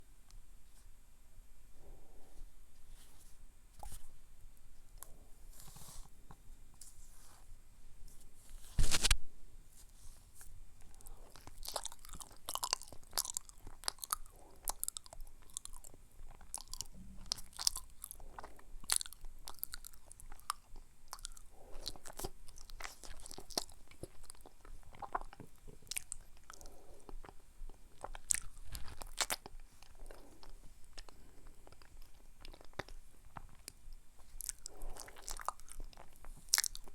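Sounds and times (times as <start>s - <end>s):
chewing mouth clicks: 10.8s - 36.9s.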